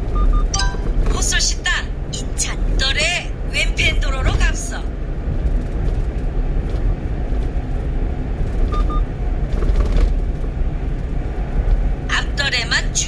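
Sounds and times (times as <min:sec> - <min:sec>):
truck road and engine rumble: 0:00.0 - 0:13.0
short double beep: 0:00.2 - 0:01.1.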